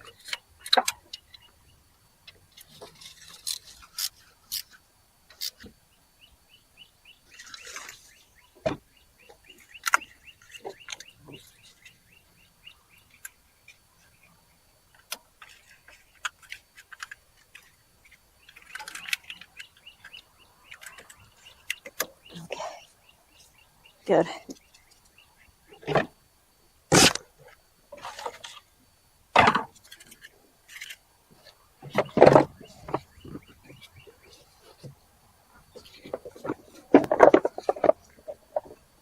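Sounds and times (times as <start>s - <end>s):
birds chirping: 0.0s - 4.5s, 5.4s - 26.1s, 31.4s - 39.0s
sharp clicks and knocks: 31.8s - 34.1s, 35.8s - 38.8s.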